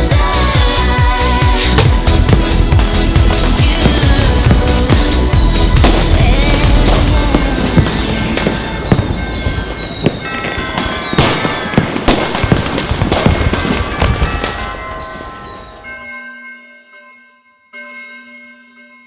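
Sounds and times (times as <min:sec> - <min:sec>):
fireworks bangs and crackling: 0:00.0 - 0:16.0
held musical tones: 0:00.0 - 0:16.2
falling whistles: 0:03.9 - 0:12.9, 0:15.0 - 0:15.9.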